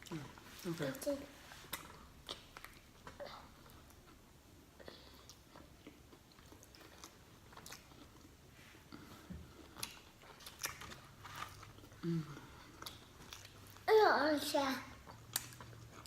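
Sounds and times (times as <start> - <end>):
biting and chewing food: 9.4 - 13.9, 15.0 - 16.0.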